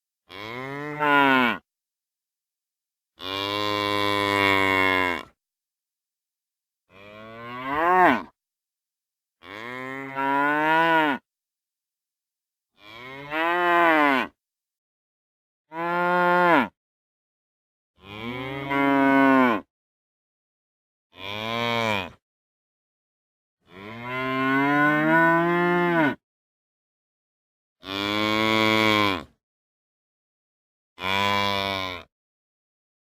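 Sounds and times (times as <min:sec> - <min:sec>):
cows mooing: 0:00.3 - 0:01.6, 0:07.0 - 0:08.3.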